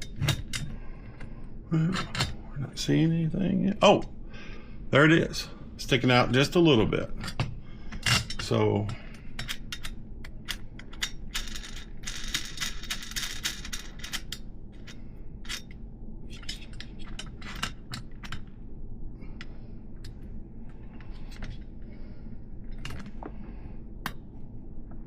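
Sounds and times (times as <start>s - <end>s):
small metal parts clicking: 8.0s - 18.5s.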